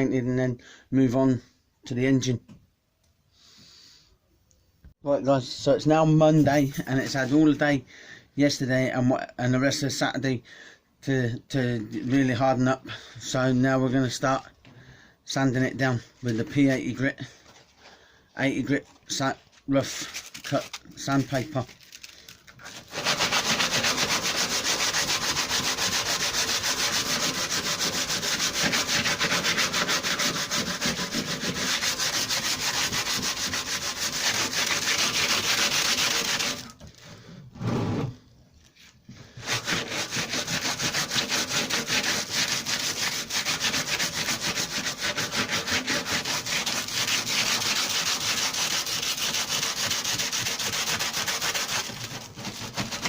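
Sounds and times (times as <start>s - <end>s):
sandpaper rasping on metal: 22.6s - 36.7s, 39.4s - 53.0s.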